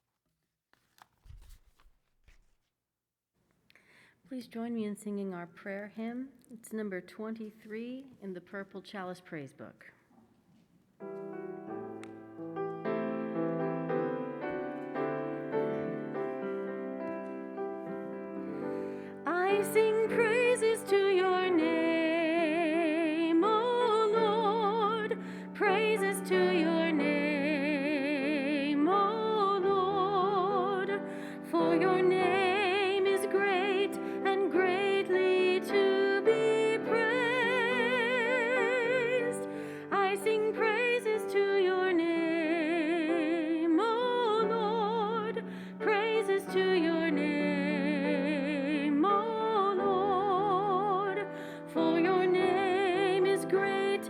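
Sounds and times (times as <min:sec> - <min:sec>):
slow hymn with vibrato melody: 0:11.1 - 0:54.0.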